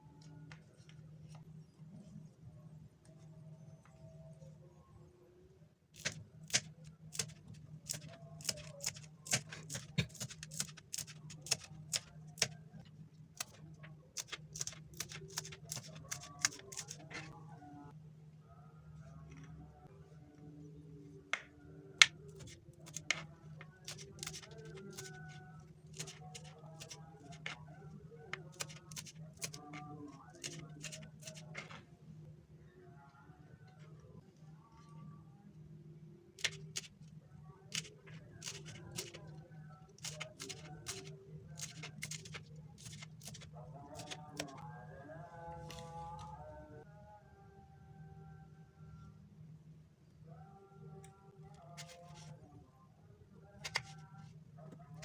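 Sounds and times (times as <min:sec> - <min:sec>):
low steady hum: 0:00.0 - 0:55.0.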